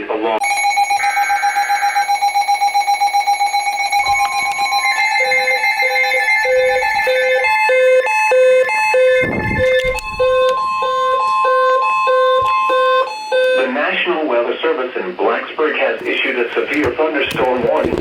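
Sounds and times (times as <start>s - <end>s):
repeating electronic beeps: 0.4s - 13.8s
steady electronic alert tones: 0.4s - 13.9s.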